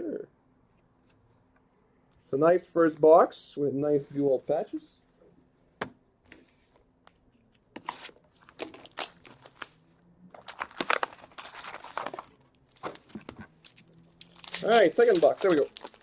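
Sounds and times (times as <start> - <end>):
plastic wrapping crinkling and tearing: 7.9 - 16.0.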